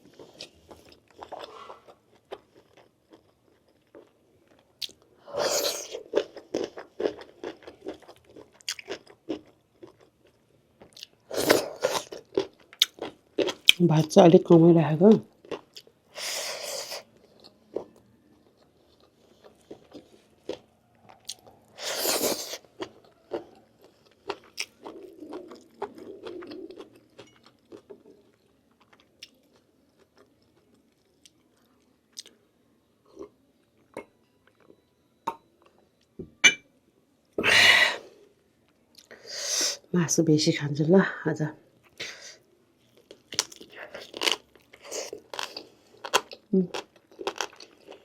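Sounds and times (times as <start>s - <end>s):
person chewing food: 0.0s - 13.8s, 15.3s - 32.4s, 42.8s - 48.0s.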